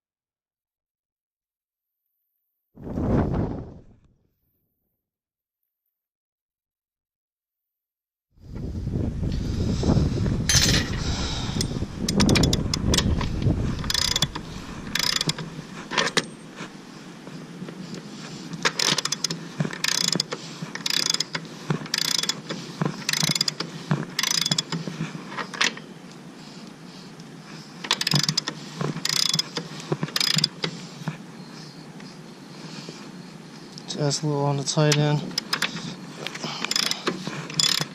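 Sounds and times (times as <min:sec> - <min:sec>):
low bump: 0:02.8 - 0:04.1
ratchet wrench clicking: 0:11.6 - 0:13.2, 0:13.8 - 0:15.4, 0:18.7 - 0:22.4, 0:23.1 - 0:23.6, 0:24.2 - 0:24.8, 0:27.9 - 0:30.6, 0:36.6 - 0:37.9.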